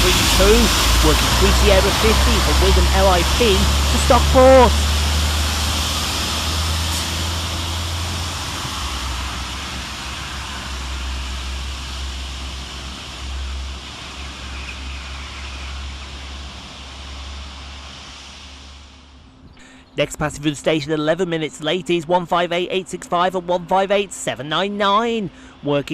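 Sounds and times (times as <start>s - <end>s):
rushing noise with low rumble: 0.0s - 20.5s
rail vehicles passing: 0.0s - 25.7s.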